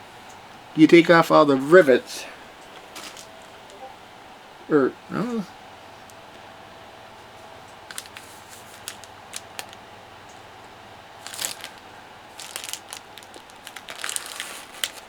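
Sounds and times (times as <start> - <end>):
paper rustling: 2.7 - 3.8, 7.9 - 9.8, 11.2 - 15.0.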